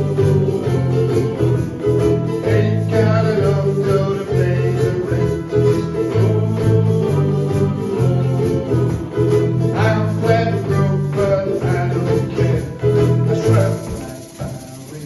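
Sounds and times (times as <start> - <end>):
shaker keeping time: 0.0 - 15.0
strummed ukuleles: 0.0 - 15.0.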